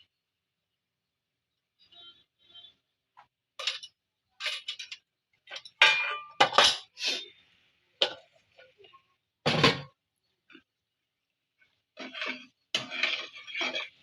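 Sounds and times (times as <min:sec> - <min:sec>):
metal pots and utensils clinking: 0:03.6 - 0:07.3, 0:08.0 - 0:08.9, 0:12.0 - 0:14.0.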